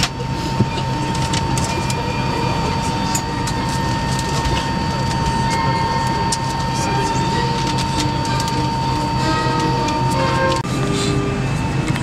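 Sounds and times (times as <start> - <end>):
airplane cabin hum: 0.0 - 12.0
high-pitched whine: 0.0 - 12.0.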